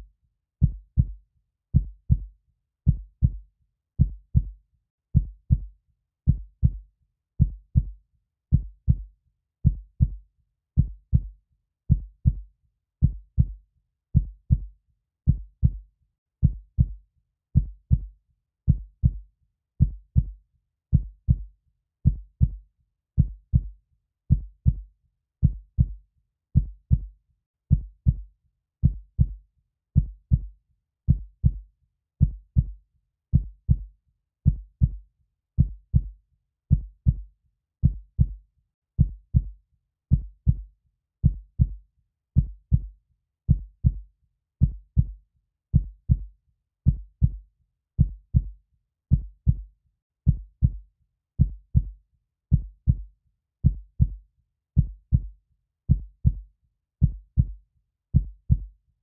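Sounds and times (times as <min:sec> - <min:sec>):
heartbeat thumps: 0:28.8 - 0:29.4, 0:30.0 - 0:30.5, 0:31.1 - 0:31.6, 0:35.6 - 0:36.1, 0:37.8 - 0:38.4, 0:40.1 - 0:40.6, 0:41.2 - 0:41.8, 0:42.4 - 0:42.9, 0:44.6 - 0:45.1, 0:45.8 - 0:46.3, 0:46.9 - 0:47.4, 0:48.0 - 0:48.5, 0:49.1 - 0:49.6, 0:50.3 - 0:50.8, 0:51.4 - 0:51.9, 0:52.5 - 0:53.0, 0:53.6 - 0:54.2, 0:54.8 - 0:55.3, 0:55.9 - 0:56.4, 0:57.0 - 0:57.6, 0:58.2 - 0:58.7.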